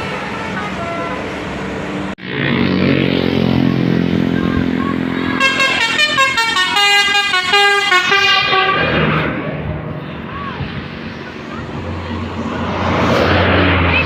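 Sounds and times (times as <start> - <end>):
vehicle engine running: 0.0 - 14.0
musical horn playing a tune: 5.4 - 9.3.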